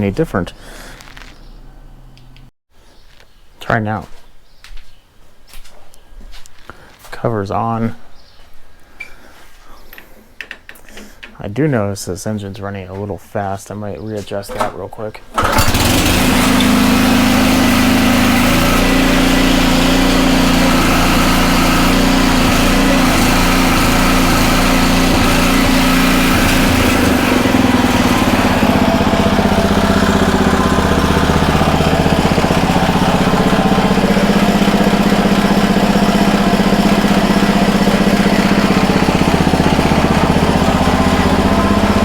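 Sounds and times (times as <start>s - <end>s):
lawn mower engine running: 15.4s - 42.0s.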